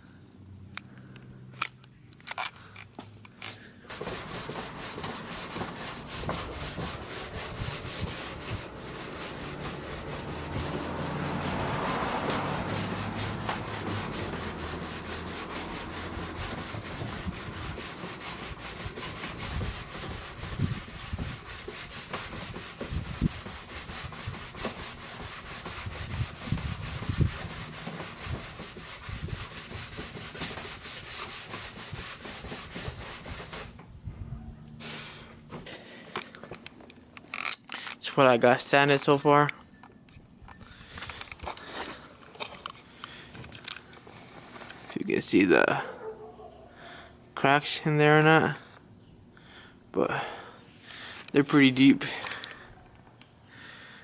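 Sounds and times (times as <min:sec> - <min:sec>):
scratchy sanding on bumper: 0:03.9 - 0:33.8.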